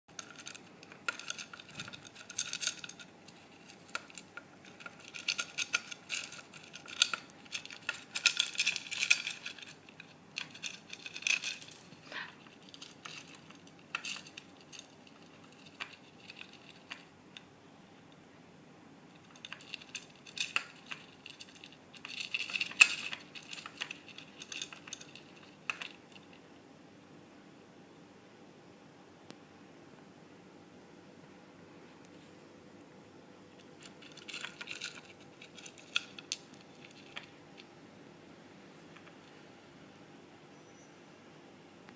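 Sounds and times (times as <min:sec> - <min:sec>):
food rattling against bowl: 0:00.1 - 0:17.1, 0:19.2 - 0:26.4, 0:33.6 - 0:37.7.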